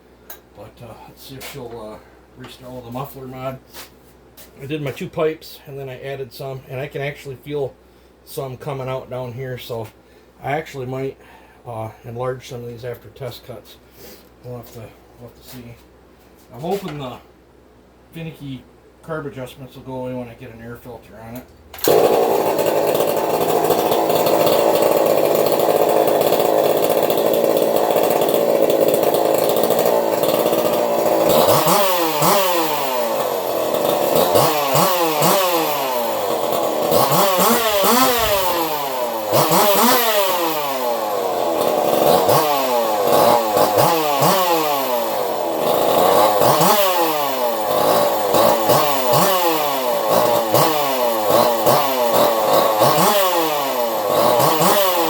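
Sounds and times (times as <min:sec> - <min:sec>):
chainsaw engine revving: 0:21.8 - 0:55.0.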